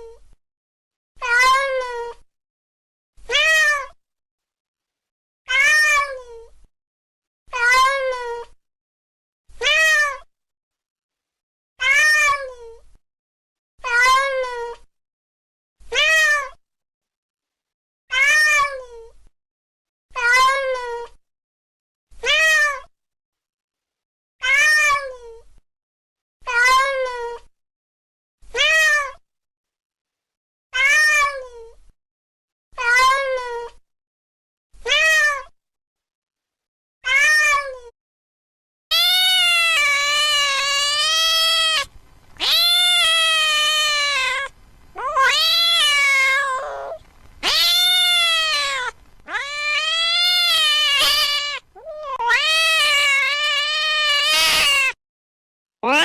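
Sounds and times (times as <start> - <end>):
cat meowing: 1.2 - 1.9, 5.5 - 6.2, 7.6 - 8.3, 9.6 - 10.2, 11.8 - 12.5, 20.2 - 20.8, 30.8 - 31.4, 37.0 - 37.7, 38.9 - 55.0.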